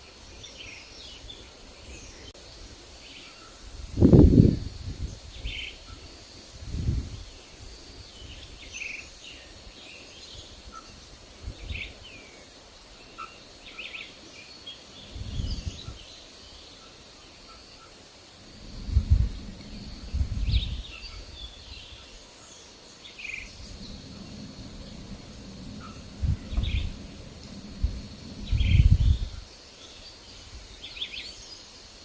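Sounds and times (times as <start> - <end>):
high insect buzz: 0.1 - 32.0
wind rumbling on microphone: 3.6 - 12.3, 15.0 - 16.2, 18.3 - 22.3, 23.1 - 31.3
small birds chirping: 6.8 - 32.0.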